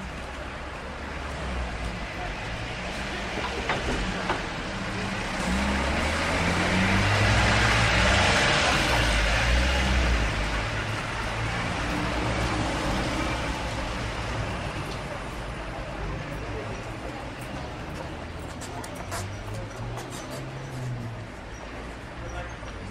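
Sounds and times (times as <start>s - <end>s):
traffic noise: 0.0s - 22.9s
vehicle passing close: 3.0s - 14.8s.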